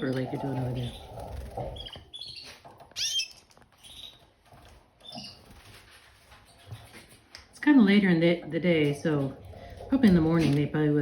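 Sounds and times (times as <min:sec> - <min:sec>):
canaries chirping: 0:00.0 - 0:07.2.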